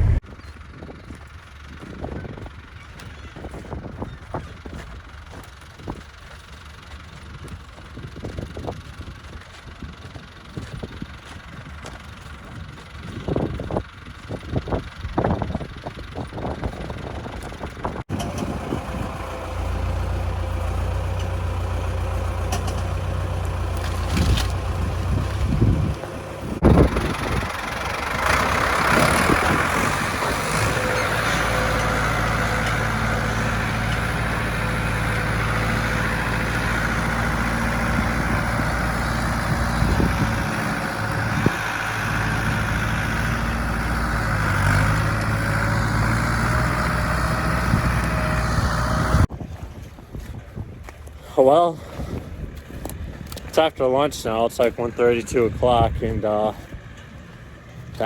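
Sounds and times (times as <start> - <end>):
heavy machinery engine running: 0.0 - 49.3.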